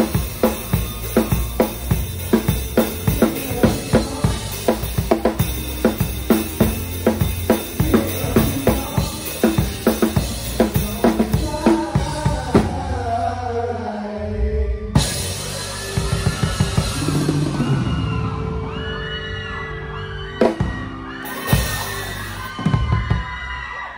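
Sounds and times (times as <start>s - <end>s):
drum kit kick and snare: 0.0s - 12.9s.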